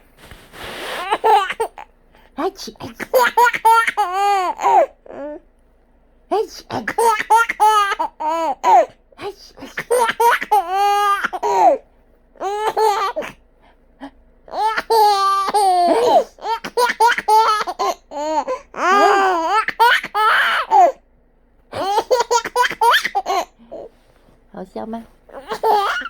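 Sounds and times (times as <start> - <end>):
baby laughing: 3.0 - 4.9, 6.9 - 8.9, 9.6 - 11.8, 14.5 - 21.0, 21.7 - 23.9, 25.3 - 26.0.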